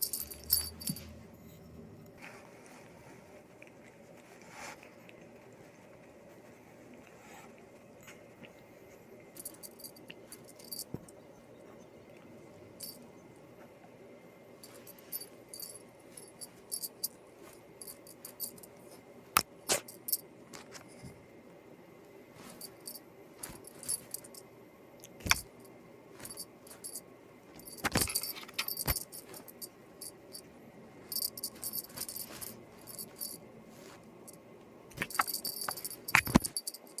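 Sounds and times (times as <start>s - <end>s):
metal tags jingling: 0.0s - 1.2s, 9.4s - 11.2s, 14.6s - 18.8s, 22.6s - 24.4s, 26.2s - 27.0s, 27.6s - 30.4s, 31.0s - 33.4s, 35.0s - 37.0s.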